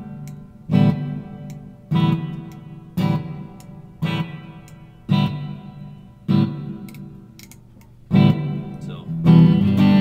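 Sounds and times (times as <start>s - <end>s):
electric guitar chords strummed: 0.0s - 10.0s.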